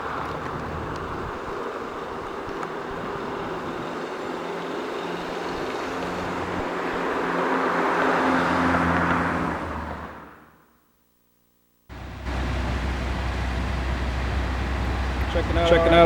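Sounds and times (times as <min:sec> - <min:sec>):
road traffic noise: 0:00.0 - 0:10.6, 0:11.9 - 0:16.0
vehicle engine running: 0:11.9 - 0:16.0.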